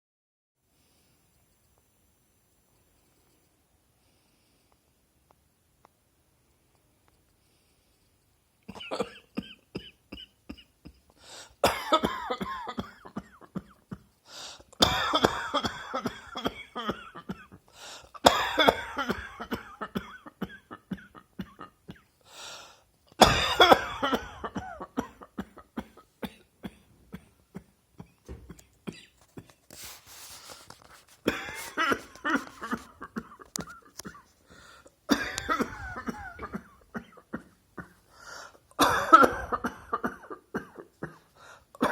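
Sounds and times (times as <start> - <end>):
person coughing: 8.7 - 11.0, 11.6 - 14.1, 14.8 - 17.6, 18.2 - 22.1, 23.2 - 29.5, 31.2 - 38.0, 38.8 - 41.9.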